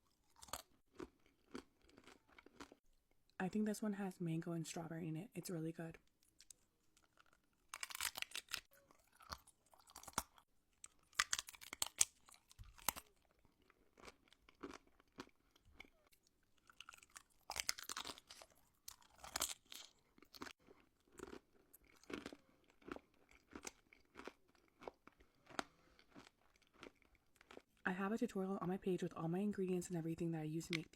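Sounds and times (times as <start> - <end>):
candy crunching: 0.0 - 2.9, 6.1 - 27.8
quiet chewing: 0.1 - 3.3, 6.2 - 27.8.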